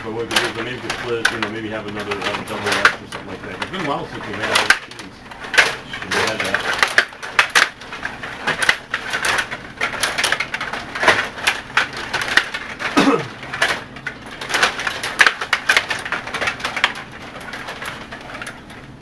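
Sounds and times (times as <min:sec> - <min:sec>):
table hockey rods clattering: 0:00.0 - 0:19.0.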